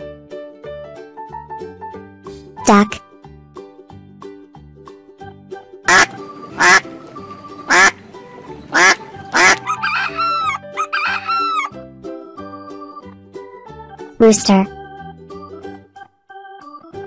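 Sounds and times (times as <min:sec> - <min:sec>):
children's music: 0:00.5 - 0:17.0
duck quacking: 0:05.9 - 0:08.0, 0:08.7 - 0:11.7.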